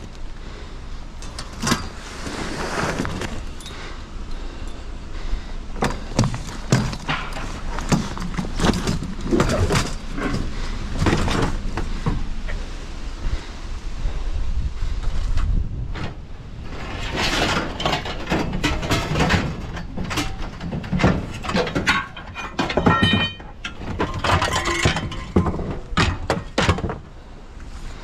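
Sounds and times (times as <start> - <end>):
scrap metal clanking and scraping: 1.2 - 4.8, 5.7 - 12.7, 15.4 - 28.0.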